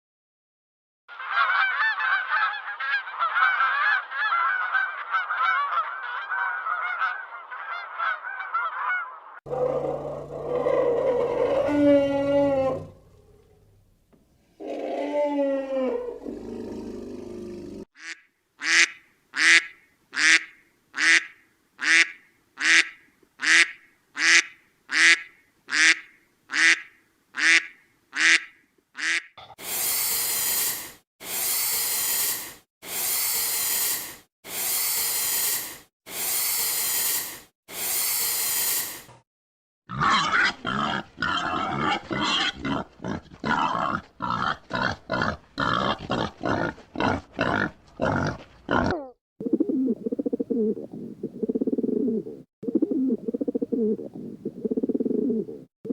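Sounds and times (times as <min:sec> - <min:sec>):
long noisy animal blasts: 0:29.6 - 0:39.2.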